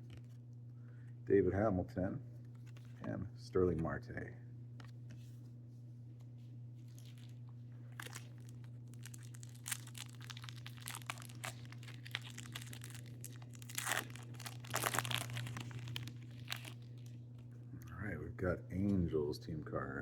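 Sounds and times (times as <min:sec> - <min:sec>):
plastic wrapper crinkling and tearing: 0:06.8 - 0:17.5.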